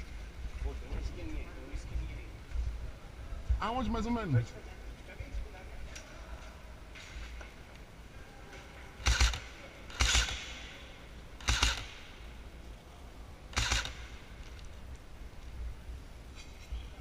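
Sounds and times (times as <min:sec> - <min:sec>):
airsoft gun shots: 0:09.0 - 0:10.8, 0:11.4 - 0:12.2, 0:13.5 - 0:14.2.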